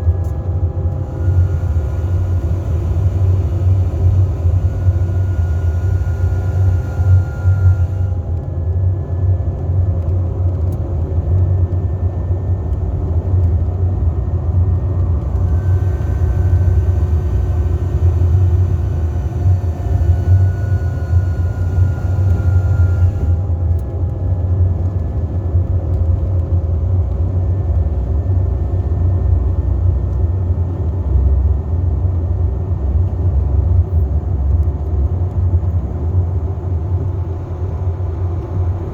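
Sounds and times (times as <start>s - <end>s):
retarder braking whine: 0.0s - 30.2s.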